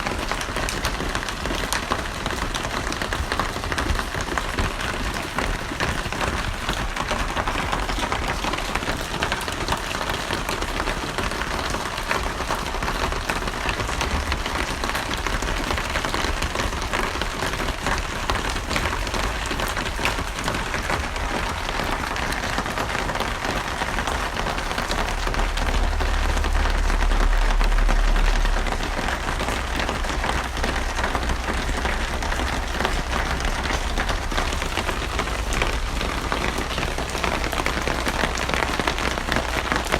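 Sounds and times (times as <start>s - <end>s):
rain pattering: 0.0s - 39.9s
low rumble: 12.8s - 39.9s.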